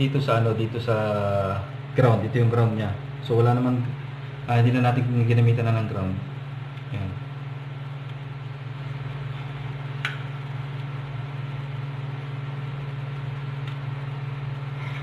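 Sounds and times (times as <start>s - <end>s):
low machine hum: 0.0s - 15.0s.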